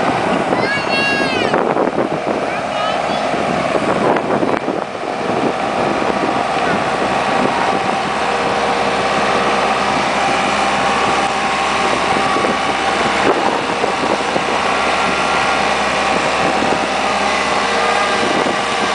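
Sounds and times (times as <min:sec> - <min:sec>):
loader engine running: 0:00.0 - 0:18.9.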